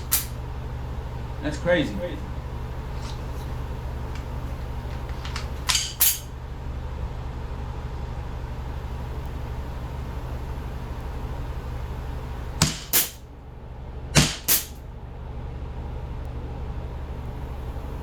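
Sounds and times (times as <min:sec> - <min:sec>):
air pistol pops: 0:00.0 - 0:00.4, 0:05.0 - 0:06.3, 0:12.6 - 0:13.2, 0:14.2 - 0:14.8
low hum: 0:00.0 - 0:18.0.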